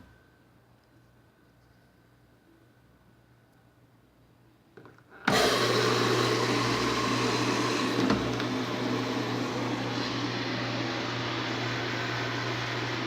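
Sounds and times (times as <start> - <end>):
washing machine humming and rushing: 5.3 - 13.0.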